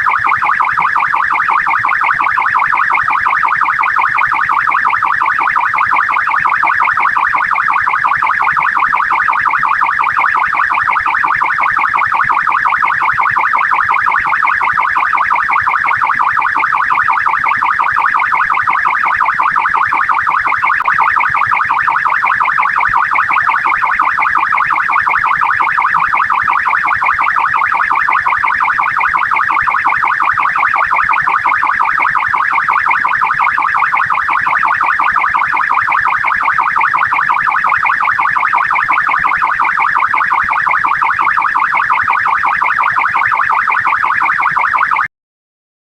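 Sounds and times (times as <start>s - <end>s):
police siren warbling: 0.0s - 45.1s.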